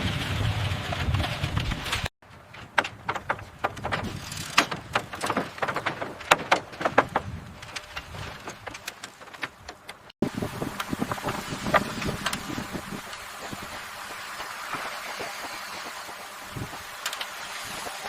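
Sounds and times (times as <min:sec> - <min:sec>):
wind noise: 0:00.0 - 0:18.0
sharp knocks and clicks: 0:01.6 - 0:10.1.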